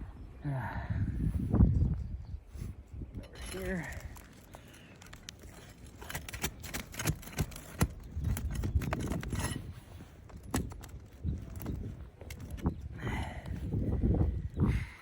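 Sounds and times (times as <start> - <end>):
scraping and crunching shingles: 3.2 - 12.8
sharp clicks and knocks: 5.0 - 9.5.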